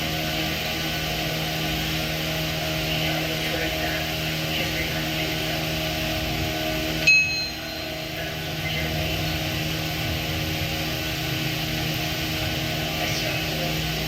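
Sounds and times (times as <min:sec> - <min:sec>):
mechanical drone: 0:00.0 - 0:14.0
high metallic ring: 0:07.0 - 0:08.3.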